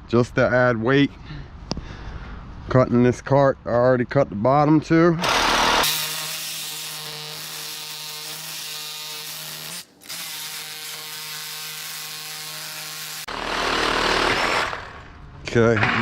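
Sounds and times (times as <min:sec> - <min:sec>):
power tool motor whining: 0:05.2 - 0:15.2.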